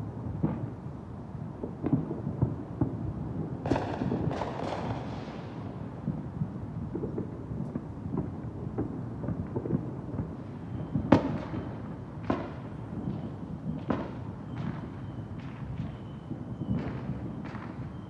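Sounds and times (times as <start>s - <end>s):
fireworks booming: 3.6s - 18.0s
sharp firework bangs: 3.7s - 5.7s.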